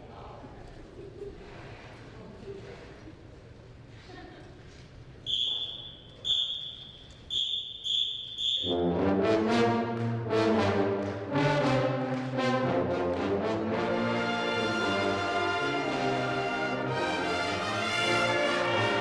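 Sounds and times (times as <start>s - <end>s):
high whistle blasts: 5.2s - 8.9s
brass band playing: 8.5s - 19.0s.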